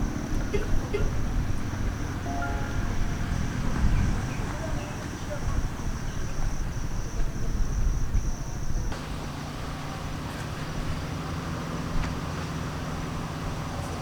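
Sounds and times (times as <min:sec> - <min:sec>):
wind rumble: 0:02.8 - 0:06.9.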